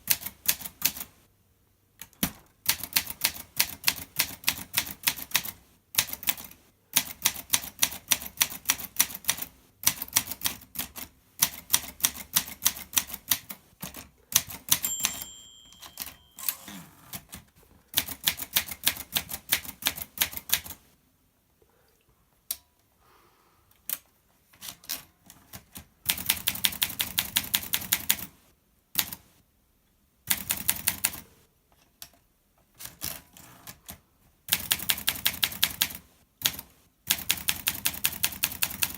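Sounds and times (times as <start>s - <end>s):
typewriter bell ring: 14.7s - 16.9s.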